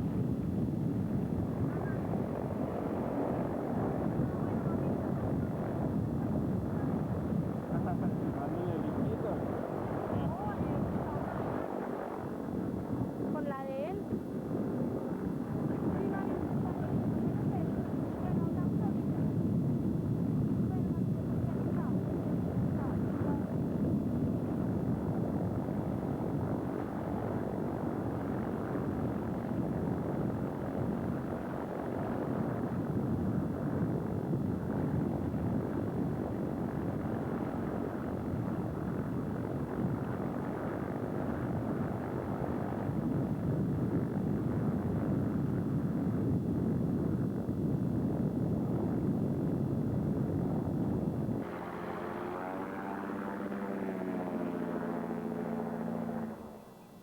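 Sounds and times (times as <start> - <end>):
propeller aircraft engine droning: 0.0 - 57.0
wavering engine note: 51.4 - 57.0.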